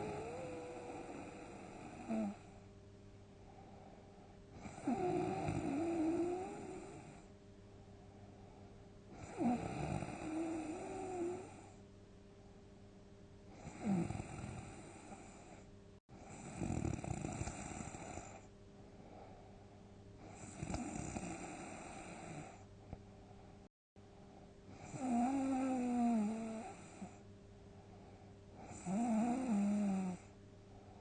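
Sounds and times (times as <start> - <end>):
person snoring loudly: 0.0 - 2.5, 4.6 - 7.2, 9.2 - 11.6, 13.6 - 15.4, 16.3 - 18.4, 20.3 - 22.6, 24.8 - 27.1, 28.7 - 30.2.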